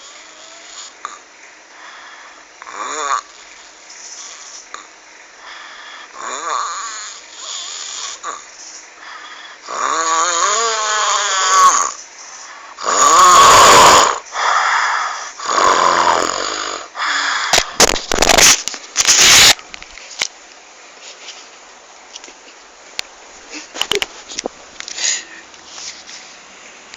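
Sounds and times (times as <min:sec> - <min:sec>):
person snoring loudly: 0:02.6 - 0:03.5, 0:04.2 - 0:08.5, 0:09.4 - 0:12.0, 0:12.7 - 0:18.5
harsh snorts: 0:12.8 - 0:19.6.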